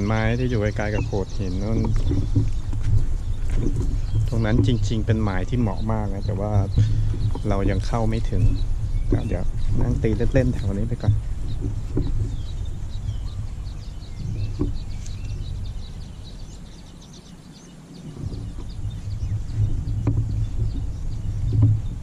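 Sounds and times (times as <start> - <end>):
birds chirping: 0.0 - 22.0
low outdoor rumble: 0.0 - 22.0.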